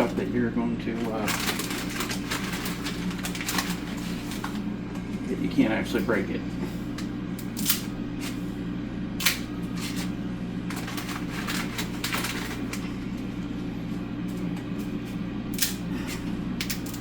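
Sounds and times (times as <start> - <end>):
steady low hum: 0.0 - 17.0
dry spaghetti snapping: 1.0 - 5.1, 6.9 - 8.4, 9.2 - 10.1, 14.3 - 17.0.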